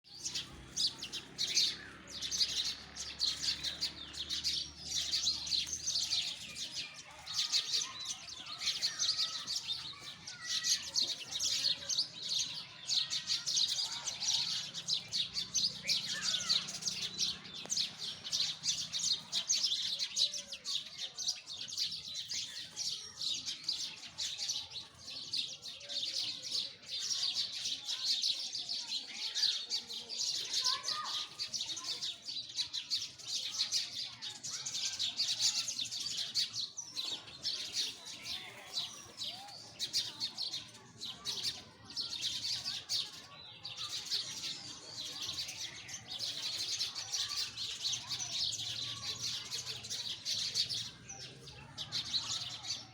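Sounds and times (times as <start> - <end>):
sparrows chirping: 0.0 - 52.9.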